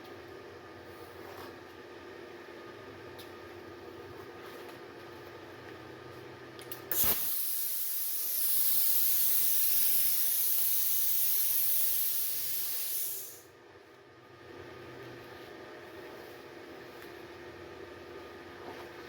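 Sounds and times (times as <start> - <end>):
cooling fan running: 0.0 - 19.0
plasma cutter hissing: 6.9 - 13.4.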